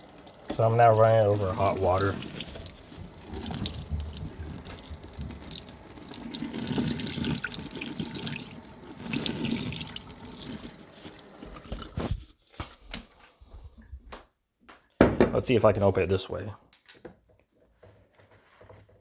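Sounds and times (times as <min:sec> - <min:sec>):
tap water splashing in sink: 0:00.0 - 0:12.1.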